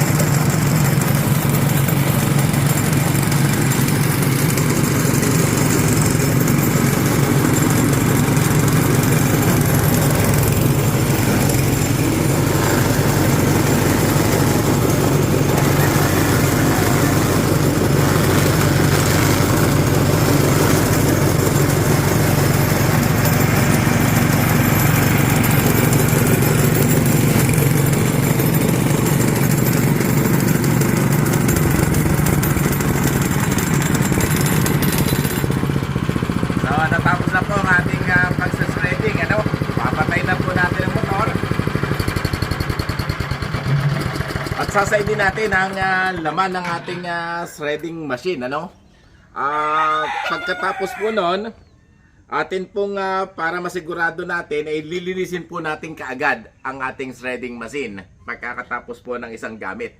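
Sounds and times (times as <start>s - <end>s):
shredder motor running: 0.0s - 46.8s.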